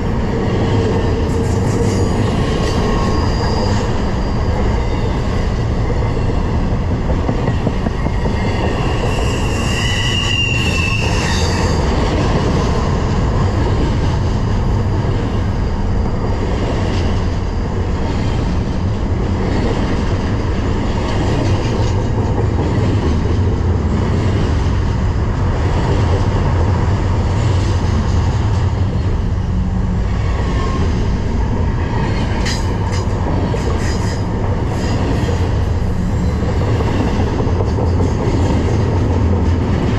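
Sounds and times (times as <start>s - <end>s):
freight train rumbling past: 0.0s - 39.9s
high wheel squeal: 2.0s - 5.6s, 8.4s - 11.9s.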